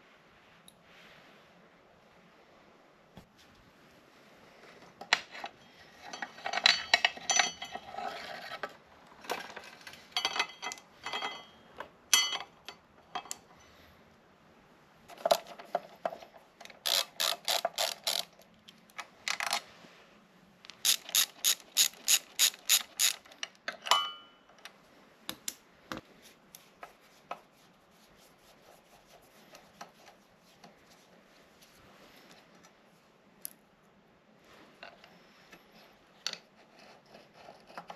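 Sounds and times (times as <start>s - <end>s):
metal tools clanking: 6.0s - 8.2s, 9.3s - 13.4s, 23.8s - 24.4s
ratchet wrench clicking: 16.8s - 18.3s, 20.7s - 23.3s.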